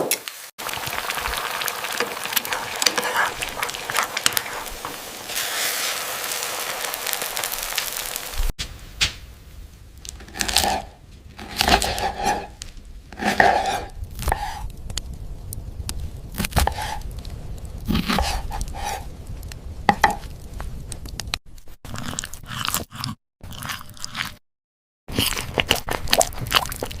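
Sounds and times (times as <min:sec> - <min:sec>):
crunching and chewing food: 0:00.6 - 0:05.3, 0:10.0 - 0:24.4, 0:25.1 - 0:27.0.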